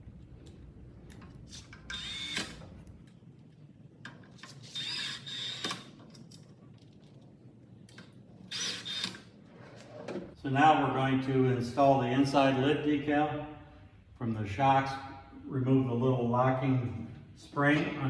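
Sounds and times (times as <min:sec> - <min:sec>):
power drill driving screws: 0:01.6 - 0:02.6, 0:04.5 - 0:05.9, 0:08.5 - 0:09.2.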